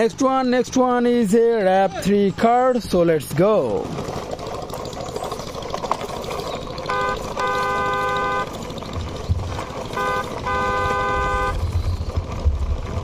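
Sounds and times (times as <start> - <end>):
car horn beeps: 6.8 - 8.6, 9.9 - 11.7.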